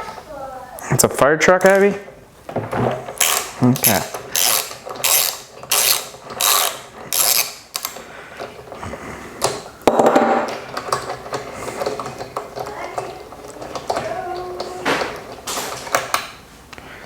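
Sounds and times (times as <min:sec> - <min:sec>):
socket ratchet clicking: 0:03.1 - 0:08.8.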